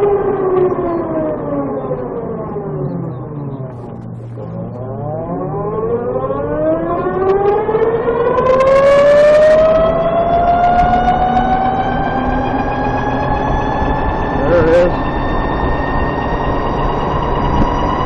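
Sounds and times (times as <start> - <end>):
electric scooter motor whining: 0.0 - 18.0
transmission chirping: 2.4 - 7.3.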